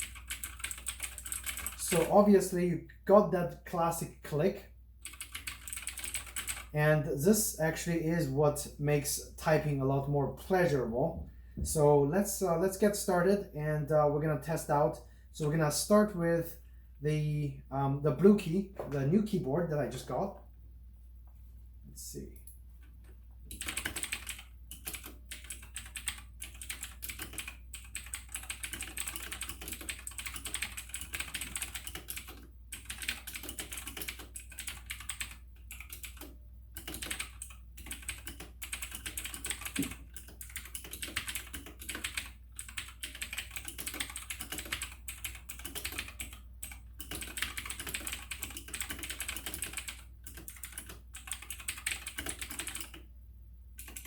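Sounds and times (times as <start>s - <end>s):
mechanical keyboard typing: 0.0s - 2.2s, 5.0s - 6.7s, 23.5s - 53.1s, 53.8s - 54.0s.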